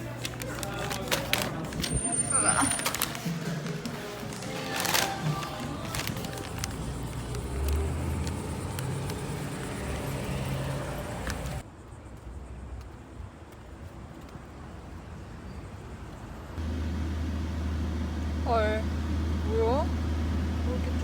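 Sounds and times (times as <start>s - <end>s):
car interior rumble: 5.6s - 11.6s.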